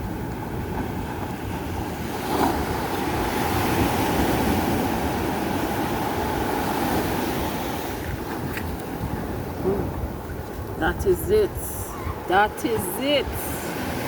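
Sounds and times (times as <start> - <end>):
sea surf: 0.0 - 14.0.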